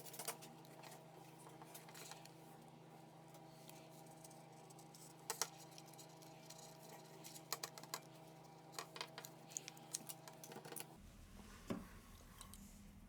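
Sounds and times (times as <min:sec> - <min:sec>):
faint electrical hum: 0:00.0 - 0:13.0
small tools clicking and tapping: 0:05.2 - 0:08.1, 0:08.7 - 0:10.9.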